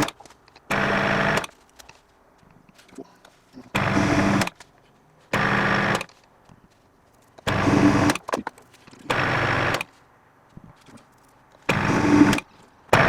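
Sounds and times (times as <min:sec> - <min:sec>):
metal lathe motor humming: 0:05.4 - 0:06.1, 0:11.7 - 0:12.4.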